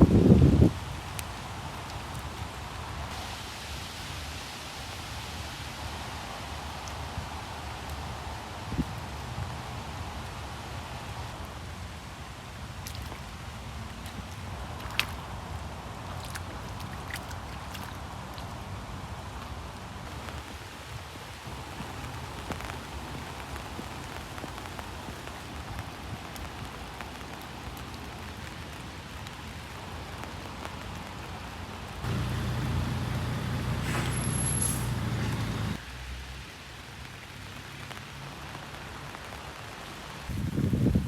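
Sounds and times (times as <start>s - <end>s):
steady rain: 0.0s - 41.0s
loud low hum: 32.0s - 35.8s
low vehicle rumble: 32.0s - 35.8s.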